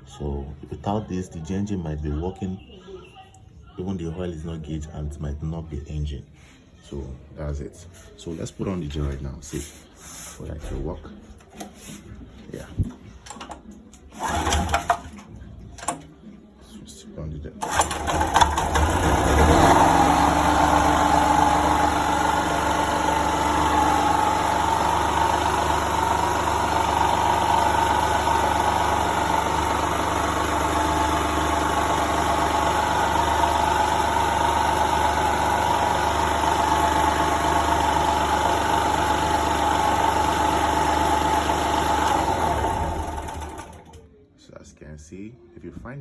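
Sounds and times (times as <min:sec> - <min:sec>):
portable generator engine running: 0:13.3 - 0:16.0, 0:17.6 - 0:44.0.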